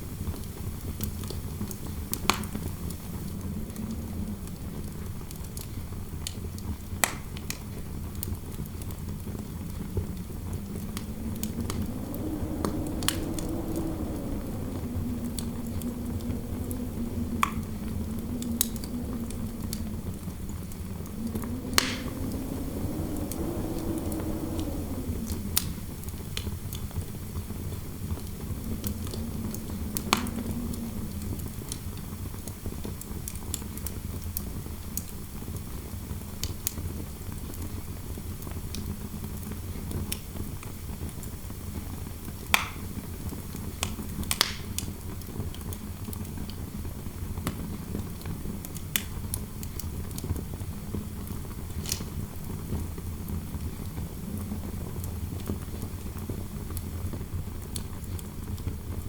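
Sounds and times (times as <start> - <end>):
wood fire crackling: 0.0 - 34.4, 38.8 - 59.0
wind rumble: 0.0 - 37.3, 38.6 - 59.0
faint wind howl: 0.0 - 59.0
fire popping: 0.2 - 33.2.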